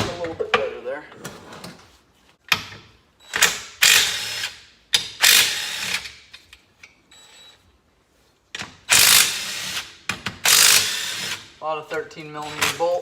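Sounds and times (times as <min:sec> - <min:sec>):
impact wrench bursts: 0:03.3 - 0:06.3, 0:08.6 - 0:11.6.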